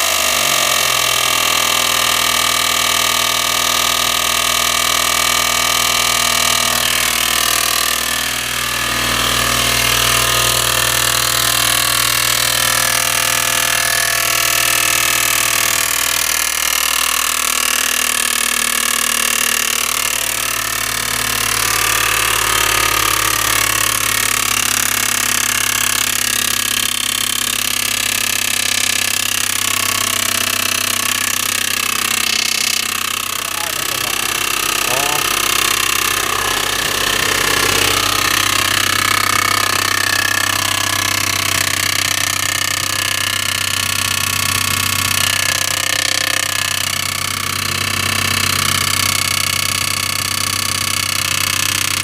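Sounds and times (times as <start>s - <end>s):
car engine running: 0.0s - 52.0s
rattling grind from engine: 0.0s - 52.0s.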